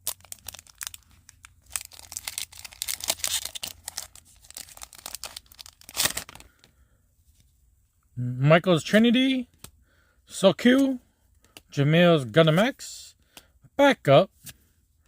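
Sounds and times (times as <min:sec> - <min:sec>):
foil wrapper tearing and crinkling: 0:00.0 - 0:06.6.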